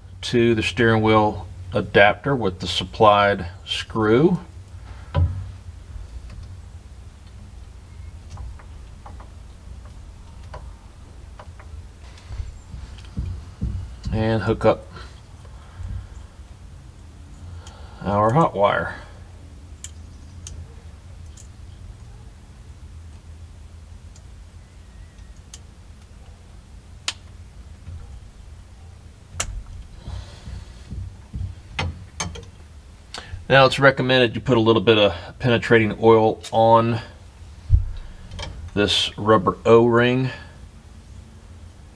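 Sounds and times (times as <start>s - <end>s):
low steady hum: 0.0s - 41.9s
sharp clicks and taps: 27.0s - 28.0s
sharp metal clicks: 27.0s - 28.0s, 29.3s - 29.9s, 31.4s - 33.2s.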